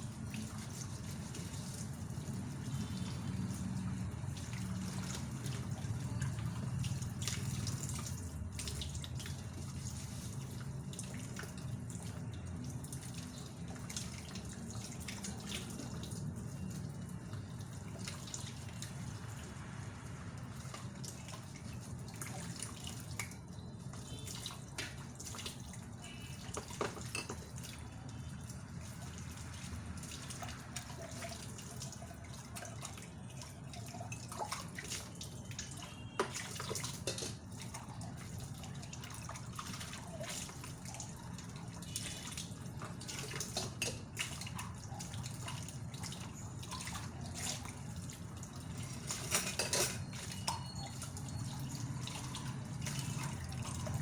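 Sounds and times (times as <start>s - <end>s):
tap water running in sink: 0.0s - 54.0s
dishes clinking: 26.8s - 27.4s, 49.1s - 50.8s.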